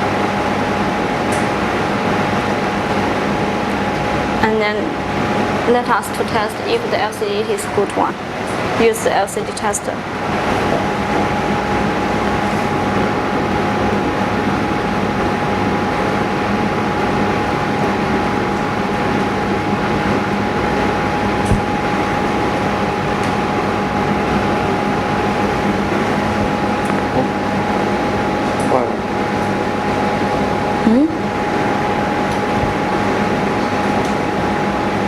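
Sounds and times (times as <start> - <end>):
mechanical running noise: 9.7 - 35.0.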